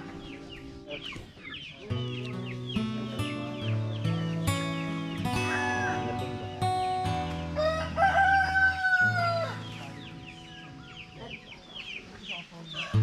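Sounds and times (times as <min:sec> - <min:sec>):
background music sustained notes: 0:00.0 - 0:13.0
rooster crowing: 0:05.3 - 0:06.3, 0:07.6 - 0:09.7.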